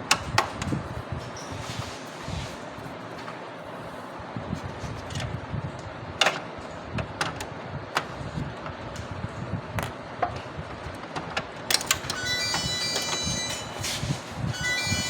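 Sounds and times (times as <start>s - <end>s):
printer mechanism rumbling: 6.1s - 15.0s.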